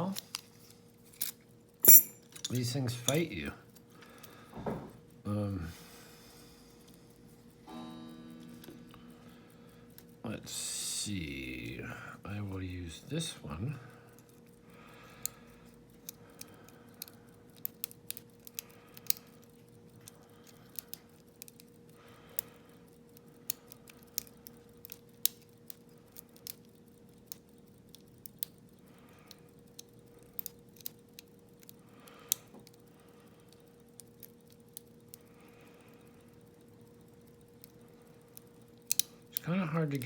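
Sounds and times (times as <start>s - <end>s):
lock pick clicking in lock: 38.9s - 39.1s.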